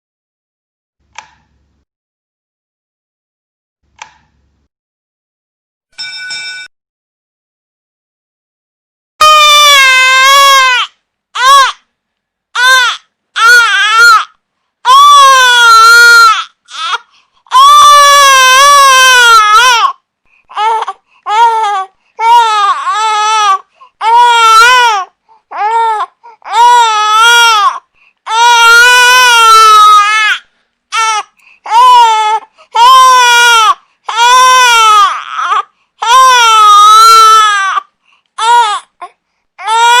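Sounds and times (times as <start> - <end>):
baby crying: 9.2 - 11.8, 12.6 - 14.3, 14.9 - 40.0.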